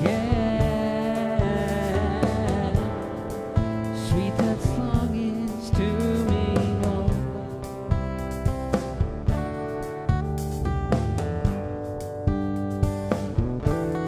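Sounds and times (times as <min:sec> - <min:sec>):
person singing: 0:00.0 - 0:07.9
guitar: 0:00.0 - 0:14.0
steady beat: 0:00.0 - 0:14.0.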